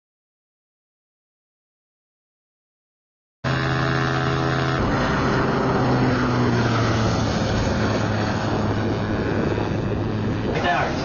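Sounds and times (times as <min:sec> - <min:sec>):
aircraft engine drone: 0:03.4 - 0:11.0.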